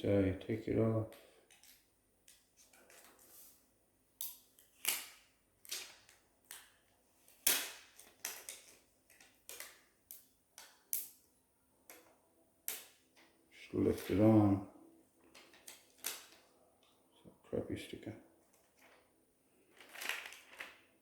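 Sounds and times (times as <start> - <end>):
plastic film peeling crackles: 15.3 - 16.5, 19.7 - 20.8.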